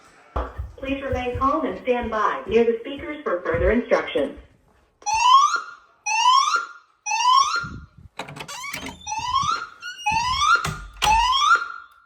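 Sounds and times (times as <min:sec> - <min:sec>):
fire alarm rising sweep tone: 0:05.0 - 0:08.0, 0:08.8 - 0:12.0.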